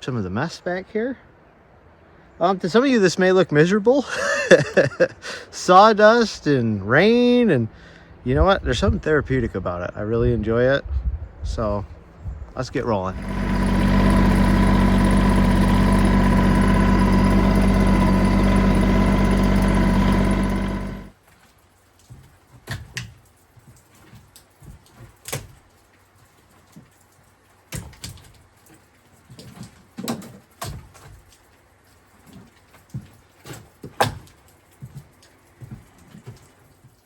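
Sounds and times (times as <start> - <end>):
tractor engine running: 13.0 - 21.1.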